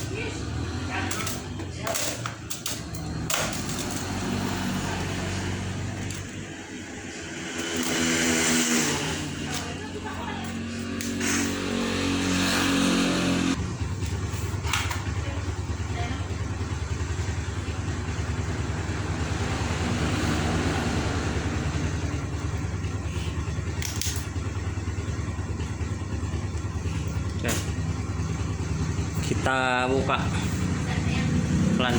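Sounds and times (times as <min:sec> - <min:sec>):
motor humming: 0:00.0 - 0:17.1.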